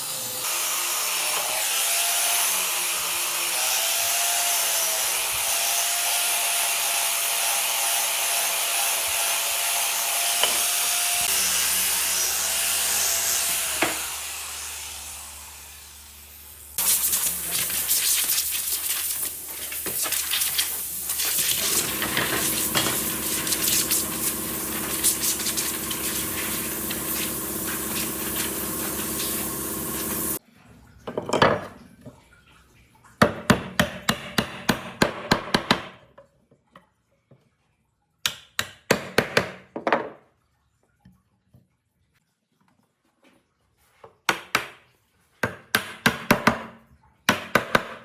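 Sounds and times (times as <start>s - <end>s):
power tool motor running: 0.0s - 18.0s, 21.0s - 30.4s.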